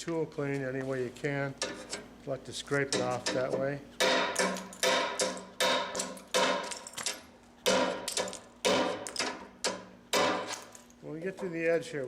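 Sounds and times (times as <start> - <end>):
hammer striking steel chisel on stone: 2.9 - 6.7, 7.7 - 10.6.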